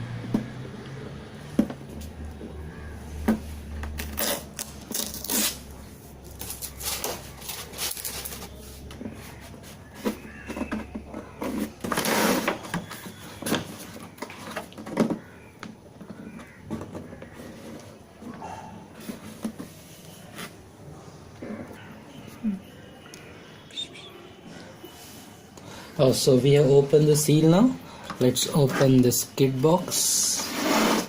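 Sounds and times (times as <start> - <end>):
scratchy rub: 30.2 - 31.0.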